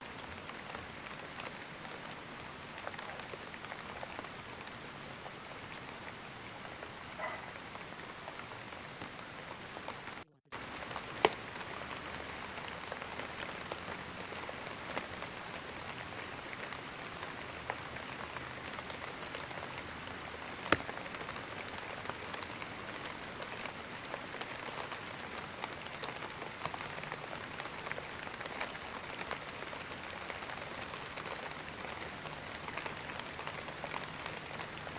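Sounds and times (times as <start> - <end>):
steady rain falling: 0.0 - 34.9.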